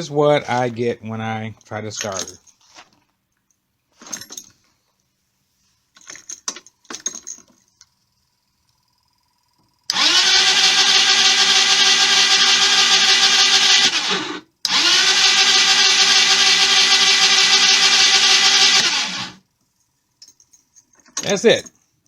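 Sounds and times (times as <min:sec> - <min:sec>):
electric starter cranking engine: 0:09.9 - 0:19.4.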